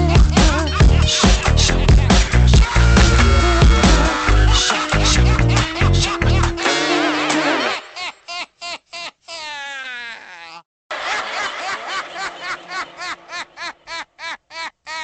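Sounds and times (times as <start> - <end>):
music: 0.0 - 7.8
person laughing in bursts: 2.7 - 15.0.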